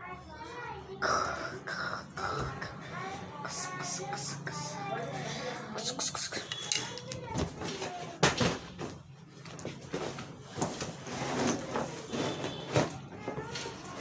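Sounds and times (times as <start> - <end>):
packaging scraping and rustling: 7.4 - 14.0.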